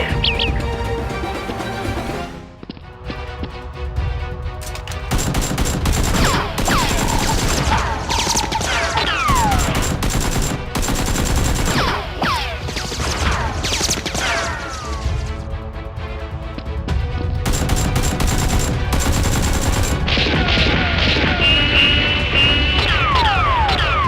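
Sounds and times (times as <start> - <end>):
automatic gunfire: 5.1 - 8.5, 9.2 - 14.5, 17.5 - 20.7.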